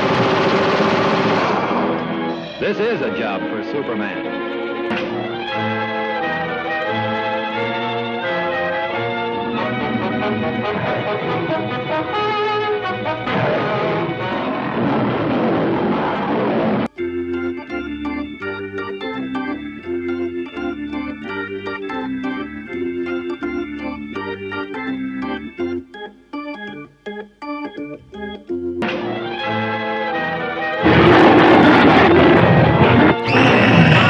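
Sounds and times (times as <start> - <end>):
organ music with pulsing bass: 0.0 - 13.3, 16.8 - 34.0
orchestral music: 1.4 - 14.2.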